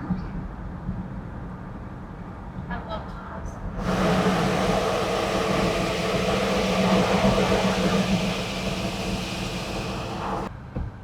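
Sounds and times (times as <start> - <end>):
car engine drone: 3.8 - 10.5
road and wind noise: 3.8 - 10.5.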